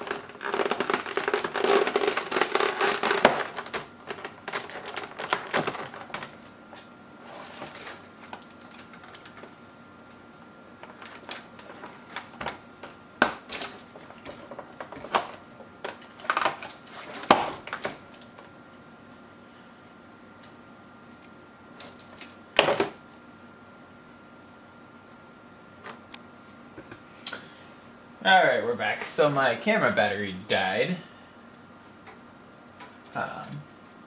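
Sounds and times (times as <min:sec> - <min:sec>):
packaging crinkling: 0:00.0 - 0:09.6, 0:10.8 - 0:18.4.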